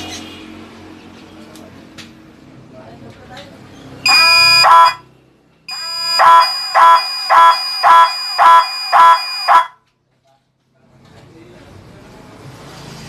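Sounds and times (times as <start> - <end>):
pulsing electric alarm horn: 4.1 - 5.0, 5.7 - 9.8.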